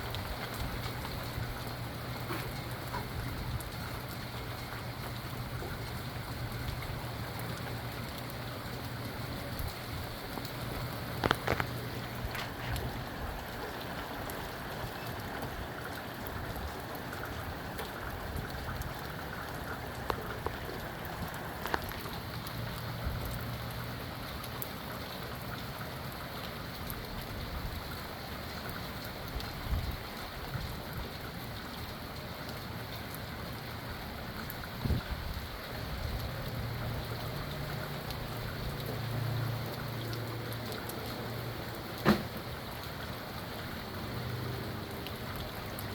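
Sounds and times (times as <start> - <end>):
steady rain falling: 0.0 - 45.9
wind gusting rumble: 9.3 - 22.1
sharp raindrop hits: 38.8 - 42.7.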